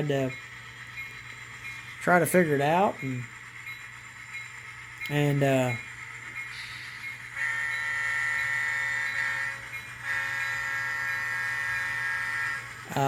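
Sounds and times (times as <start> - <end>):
model locomotive horn blasts: 6.6 - 12.8.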